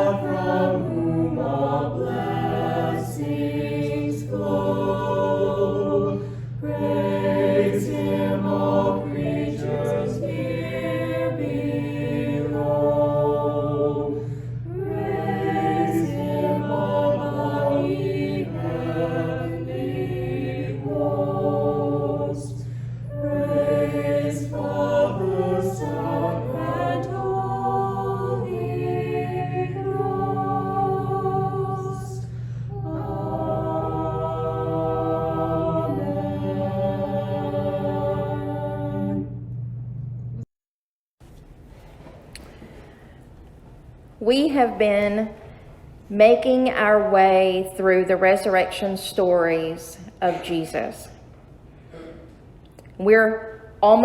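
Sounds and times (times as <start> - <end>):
choir singing: 0.0 - 39.6
steady low hum: 0.0 - 40.5, 41.2 - 54.0.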